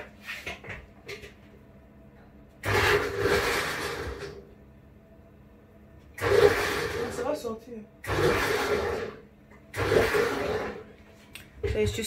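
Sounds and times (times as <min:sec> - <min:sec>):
electric blender whirring: 0:02.6 - 0:04.4, 0:06.2 - 0:07.4, 0:08.0 - 0:10.9.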